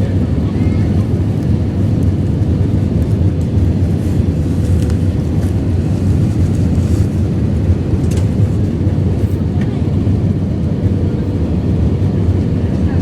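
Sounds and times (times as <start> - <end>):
aircraft engine and airflow rumble: 0.0 - 13.0.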